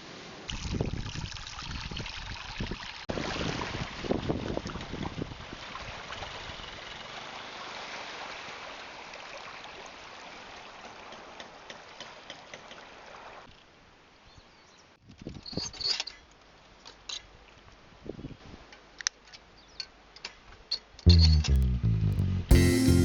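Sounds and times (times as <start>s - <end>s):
small waves washing on shore: 3.1s - 13.5s.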